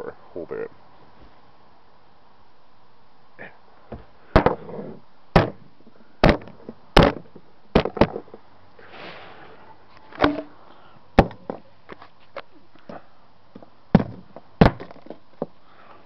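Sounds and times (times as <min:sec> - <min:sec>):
soft scraping rustle: 0:08.8 - 0:10.9, 0:11.8 - 0:13.7.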